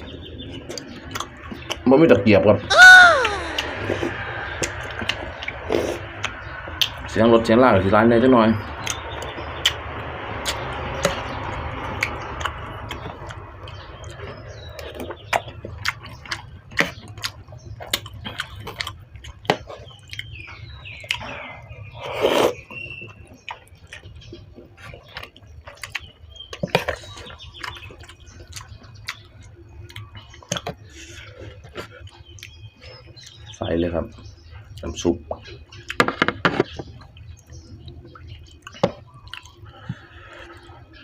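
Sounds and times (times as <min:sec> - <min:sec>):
passing traffic: 0:03.5 - 0:15.6
chewing and slurping: 0:08.8 - 0:33.4.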